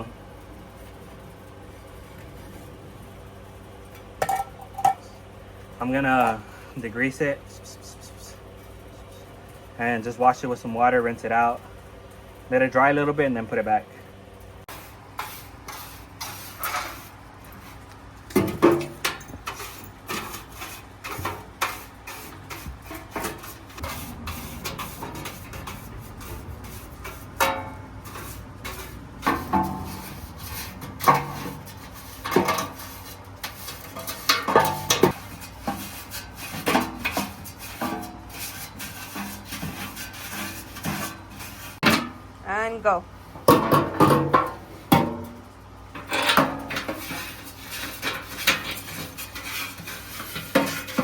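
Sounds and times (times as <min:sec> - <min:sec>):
metal parts clanking and scraping: 0:04.0 - 0:05.1, 0:15.7 - 0:42.1, 0:45.2 - 0:51.0.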